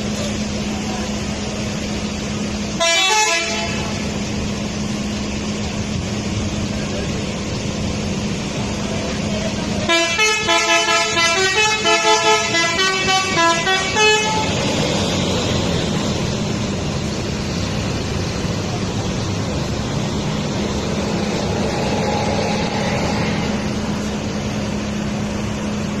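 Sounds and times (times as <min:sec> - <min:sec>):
bus engine hum: 0:00.0 - 0:26.0
traffic noise: 0:00.0 - 0:26.0
musical bus horn melody: 0:02.8 - 0:04.0, 0:09.8 - 0:14.6.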